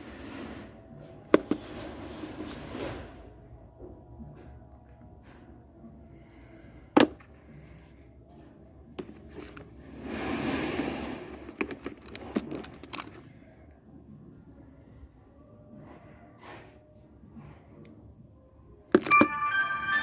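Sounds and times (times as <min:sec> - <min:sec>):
packaging rustle: 0:11.4 - 0:13.2.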